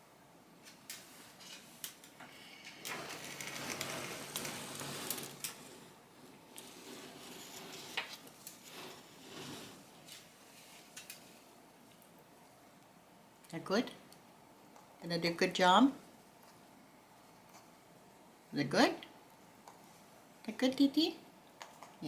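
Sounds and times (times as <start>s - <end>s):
rustling and scraping: 0.7s - 11.5s.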